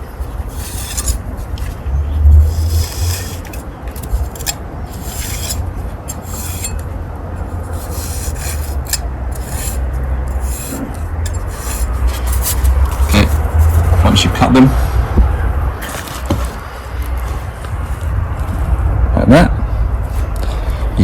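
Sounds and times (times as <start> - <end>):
trowel scraping mortar: 0.0 - 1.7, 2.4 - 14.1
steady low rumble: 0.0 - 21.0.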